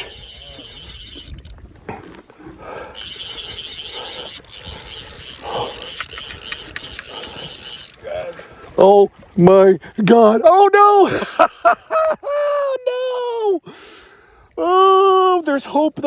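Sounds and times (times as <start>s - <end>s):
fly reel drag buzzing: 0.0s - 1.5s, 2.8s - 8.0s.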